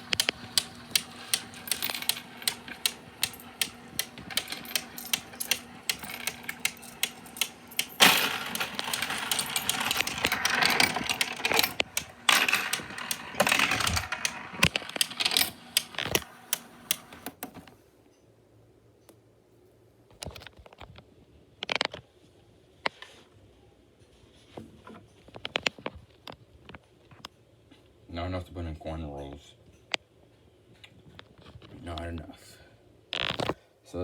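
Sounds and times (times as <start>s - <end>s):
coins rattling: 0.0s - 17.4s
coin sorter humming: 0.0s - 17.7s
coins clicking through sorter: 0.0s - 17.7s.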